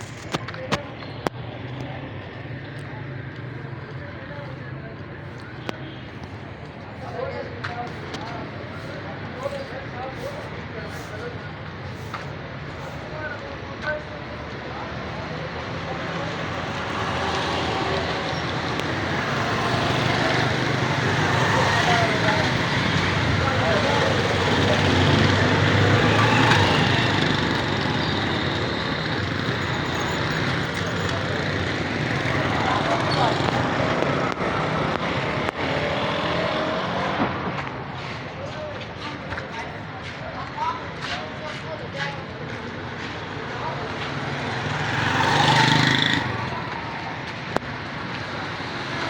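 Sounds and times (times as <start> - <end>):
street traffic: 0.0 - 49.0
vehicle engine passing by: 30.3 - 38.2, 43.9 - 47.1.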